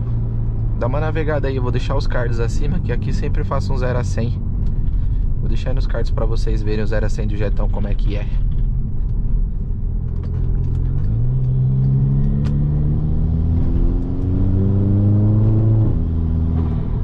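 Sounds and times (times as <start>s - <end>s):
car engine accelerating hard: 10.0s - 17.0s.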